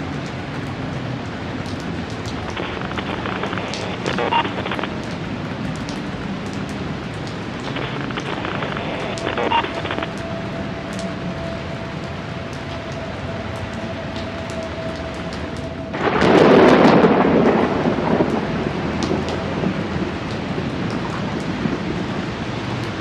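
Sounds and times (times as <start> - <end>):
steady rain falling: 0.0 - 23.0
short bursts of noise: 2.4 - 5.1, 7.6 - 10.2.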